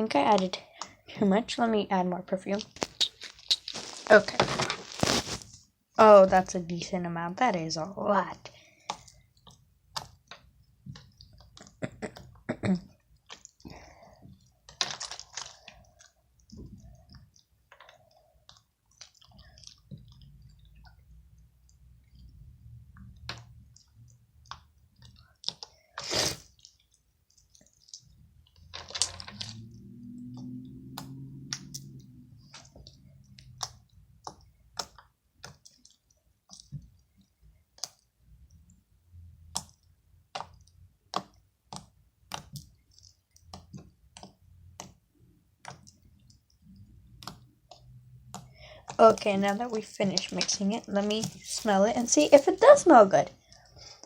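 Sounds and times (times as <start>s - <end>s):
slime squelching: 0.0s - 54.0s
slime clicking and popping: 2.5s - 4.2s, 8.8s - 12.3s, 32.5s - 37.1s, 39.4s - 49.4s
low hum: 29.2s - 34.0s.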